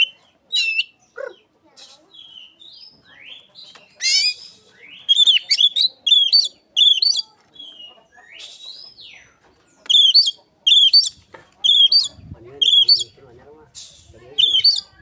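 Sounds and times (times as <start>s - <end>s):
bird singing whistles: 4.0s - 7.3s, 9.9s - 13.2s, 13.8s - 15.0s
harsh rasping bird call: 4.0s - 7.3s.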